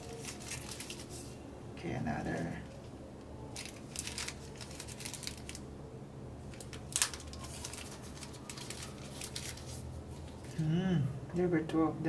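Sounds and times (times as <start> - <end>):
plastic packaging rustling: 0.0 - 1.4, 2.2 - 5.7, 6.4 - 10.6.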